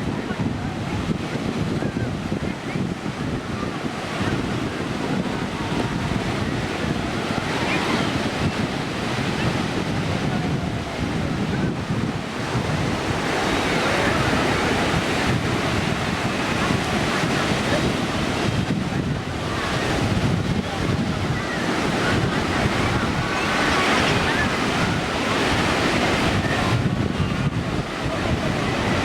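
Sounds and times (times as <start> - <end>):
ocean surf washing onto beach: 0.0 - 29.0
wind buffeting microphone: 0.0 - 29.0.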